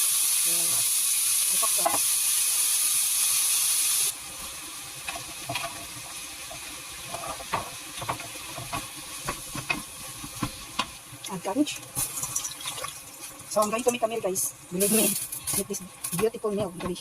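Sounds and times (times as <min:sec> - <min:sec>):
food sizzling in a frying pan: 0:00.0 - 0:17.0
utensil tapping a pan: 0:05.0 - 0:11.0.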